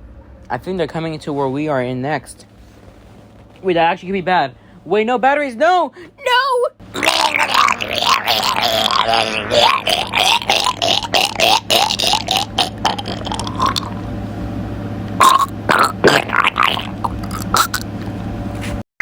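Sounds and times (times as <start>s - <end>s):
steady low hum: 0.0s - 18.8s
person making short rising vocal noises: 6.9s - 13.2s.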